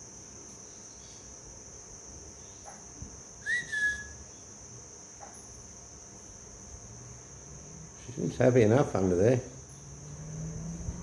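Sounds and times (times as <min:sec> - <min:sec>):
crickets trilling: 0:00.0 - 0:11.0
parrot whistle: 0:03.4 - 0:04.2.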